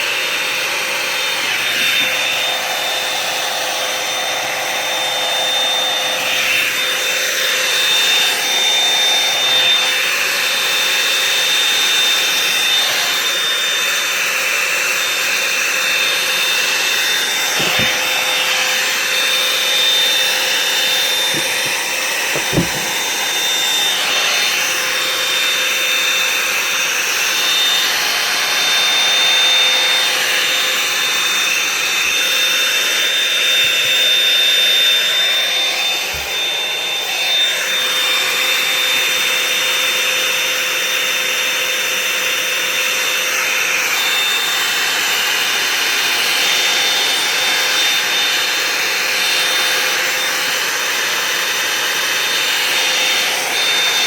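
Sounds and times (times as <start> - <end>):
hair dryer fan whine: 0.0 - 54.0
brief knocks: 22.4 - 23.0.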